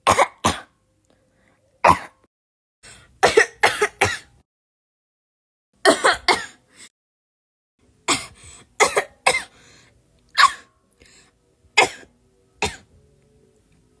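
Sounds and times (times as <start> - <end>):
girl coughing: 3.2 - 4.3, 5.8 - 6.6, 8.1 - 9.5, 11.8 - 12.9.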